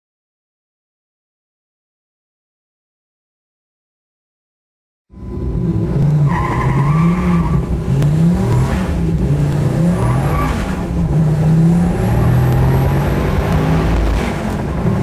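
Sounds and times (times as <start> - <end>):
car engine accelerating hard: 5.2 - 15.0.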